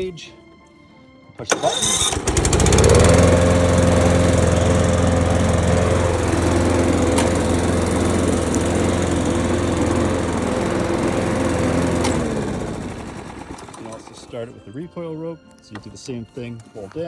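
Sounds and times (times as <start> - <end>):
lawnmower engine running: 1.5 - 14.6.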